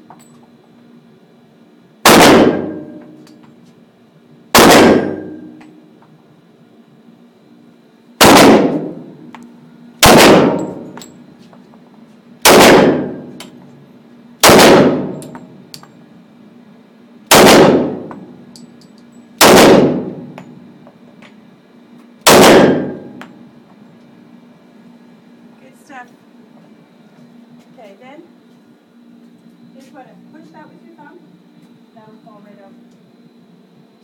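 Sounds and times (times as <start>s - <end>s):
pistol shots: 2.0s - 3.0s, 4.6s - 5.5s, 8.2s - 9.0s, 10.0s - 10.8s, 12.4s - 13.2s, 14.4s - 15.2s, 17.3s - 18.1s, 19.4s - 20.3s, 22.2s - 23.1s
gunshot echo: 2.1s - 2.9s, 4.6s - 5.4s, 8.2s - 9.0s, 10.0s - 10.8s, 12.5s - 13.2s, 14.4s - 15.2s, 17.3s - 18.0s, 19.4s - 20.2s, 22.3s - 23.1s.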